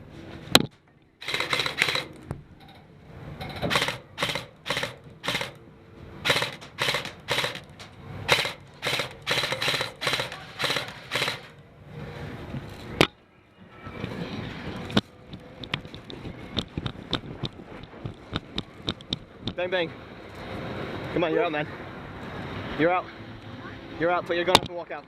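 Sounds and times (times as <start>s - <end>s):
sharp clacks and knocks: 6.3s - 11.5s.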